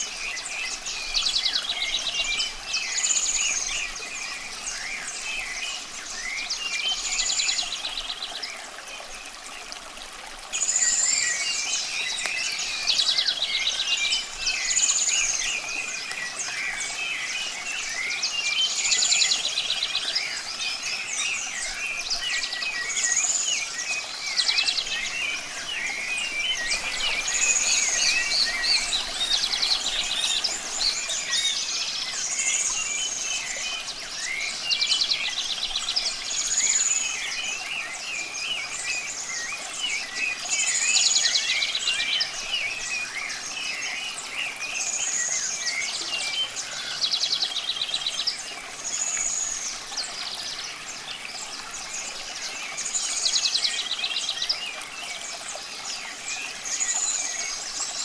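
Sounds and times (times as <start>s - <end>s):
running water hiss: 0.0s - 58.0s
birds chirping: 22.2s - 35.8s
songbird trilling: 24.4s - 32.7s.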